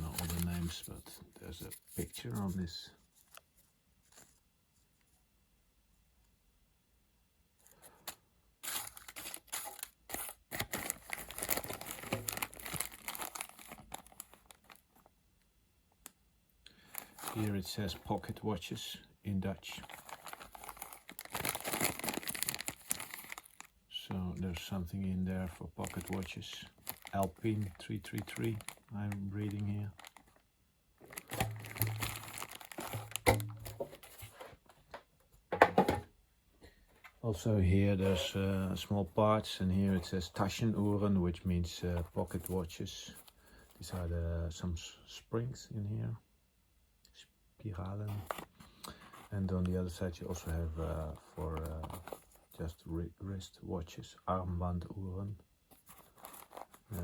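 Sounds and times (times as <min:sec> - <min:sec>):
packaging crinkling and rustling: 0:00.0 - 0:04.4, 0:07.9 - 0:15.1, 0:16.8 - 0:18.4, 0:19.6 - 0:23.8, 0:25.4 - 0:30.4, 0:31.0 - 0:34.8, 0:38.0 - 0:38.9, 0:48.1 - 0:49.3, 0:50.2 - 0:52.6, 0:55.7 - 0:57.0.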